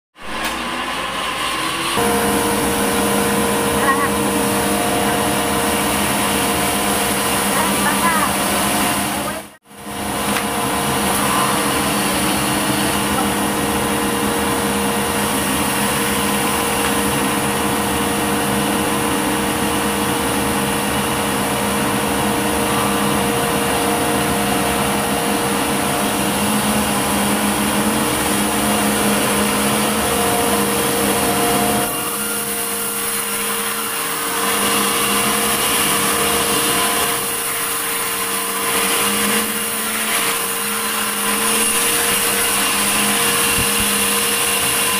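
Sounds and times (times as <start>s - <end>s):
sawmill saw whining: 0.2s - 44.9s.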